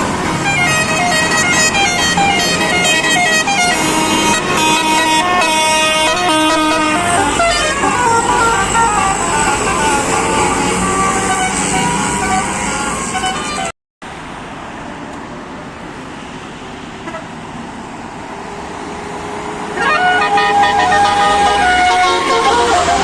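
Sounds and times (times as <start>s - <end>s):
bus air horn melody: 0.0s - 13.7s, 19.8s - 23.0s
road traffic and engine noise: 0.0s - 23.0s.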